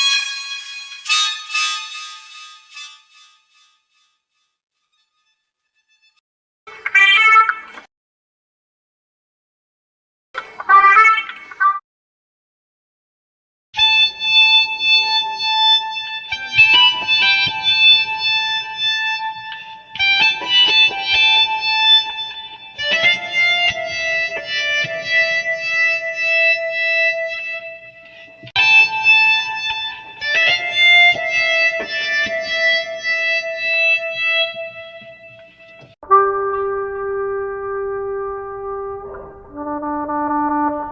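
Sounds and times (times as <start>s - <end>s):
instrument playing chords: 0.0s - 3.6s, 13.8s - 40.9s.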